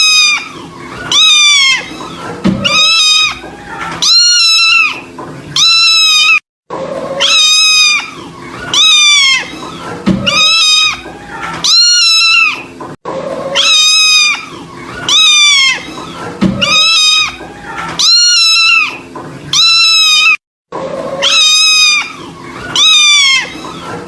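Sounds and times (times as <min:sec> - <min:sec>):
kitten meowing: 0:00.0 - 0:00.5, 0:01.1 - 0:01.9, 0:02.6 - 0:03.4, 0:04.0 - 0:05.0, 0:05.6 - 0:06.4, 0:07.2 - 0:09.6, 0:10.3 - 0:11.0, 0:11.6 - 0:12.7, 0:13.6 - 0:14.5, 0:15.1 - 0:15.9, 0:16.6 - 0:17.4, 0:18.0 - 0:20.4, 0:21.2 - 0:22.2, 0:22.8 - 0:23.6.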